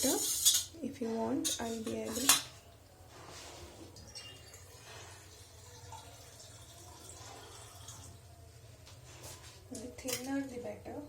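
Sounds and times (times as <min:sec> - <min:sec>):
water pouring faintly: 0:03.0 - 0:08.2.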